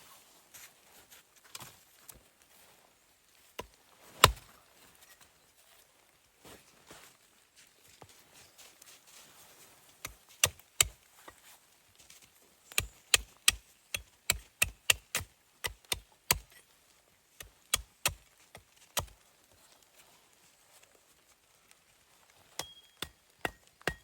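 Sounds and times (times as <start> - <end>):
axe chopping wood: 4.2 - 4.5, 10.4 - 11.0, 12.7 - 16.6, 17.4 - 18.2, 22.6 - 24.0.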